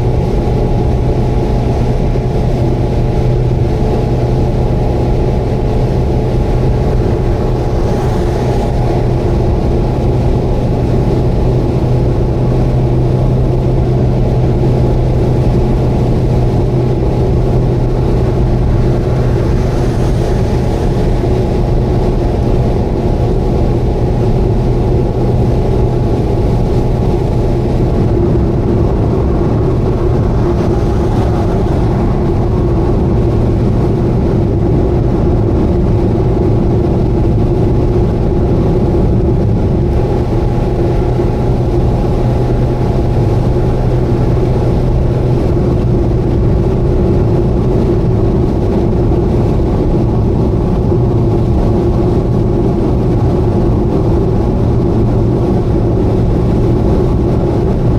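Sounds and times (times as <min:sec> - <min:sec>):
car engine and road hum: 0:00.0 - 0:57.9.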